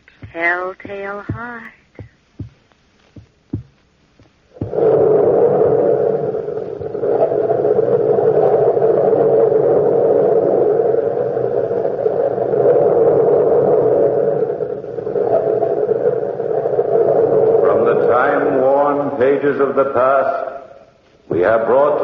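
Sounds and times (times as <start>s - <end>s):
faint thumps: 0.0s - 5.2s
sustained rushing rumble: 4.6s - 15.1s.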